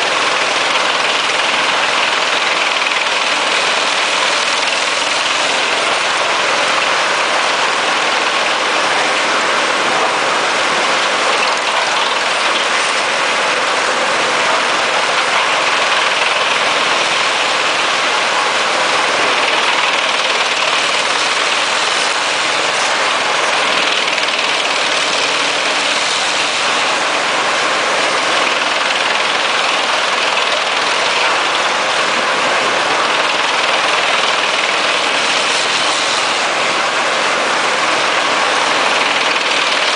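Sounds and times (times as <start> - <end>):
wood chipper diesel engine running: 0.0 - 39.9.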